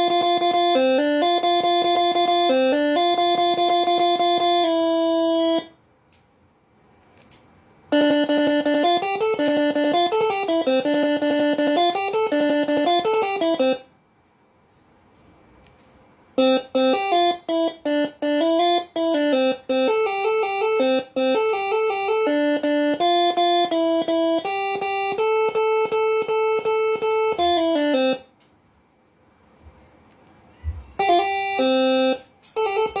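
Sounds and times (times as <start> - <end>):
multi-trumpet air horn tune: 30.6 - 33.0.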